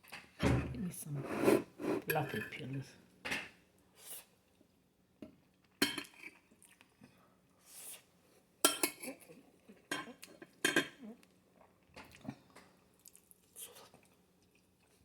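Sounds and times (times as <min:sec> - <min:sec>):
cutlery clinking on dishes: 0:08.7 - 0:09.3.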